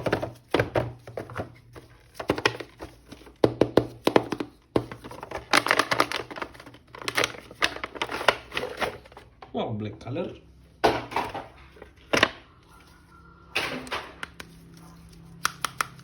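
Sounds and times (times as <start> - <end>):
hands handling plastic toy and packaging: 0.0 - 9.4, 13.7 - 16.0.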